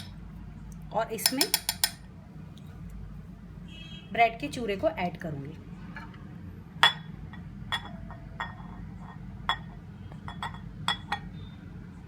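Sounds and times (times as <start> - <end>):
spoon clinking against bowl: 1.2 - 2.0, 6.8 - 11.3.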